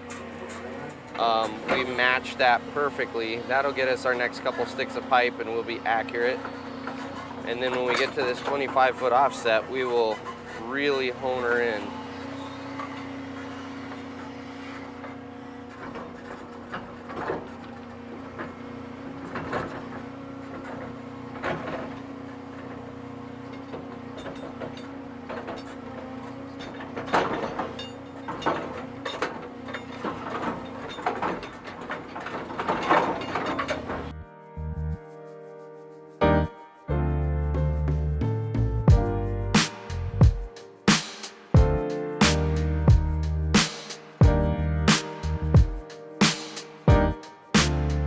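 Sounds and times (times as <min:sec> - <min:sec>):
excavator diesel engine running: 0:00.0 - 0:31.1.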